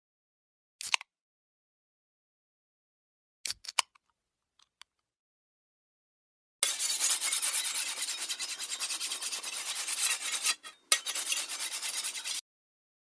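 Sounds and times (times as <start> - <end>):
rapid rasping scrape: 6.6 - 12.4.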